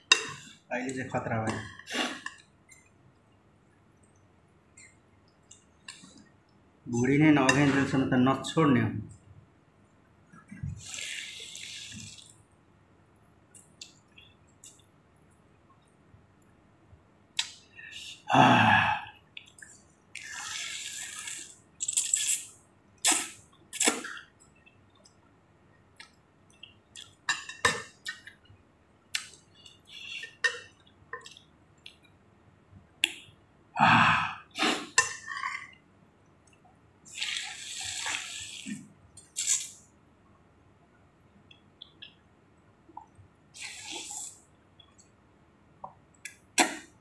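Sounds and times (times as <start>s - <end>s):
slurping noodle soup: 10.7s - 12.3s, 20.1s - 24.2s, 34.4s - 35.3s, 37.1s - 39.8s, 43.6s - 44.5s.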